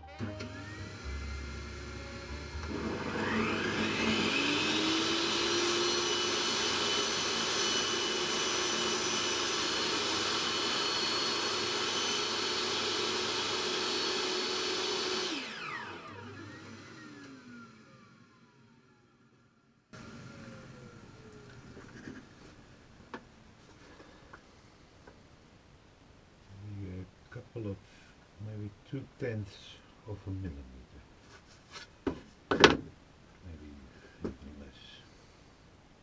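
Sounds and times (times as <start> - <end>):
table saw motor whining: 0.2 - 19.2, 20.0 - 21.9.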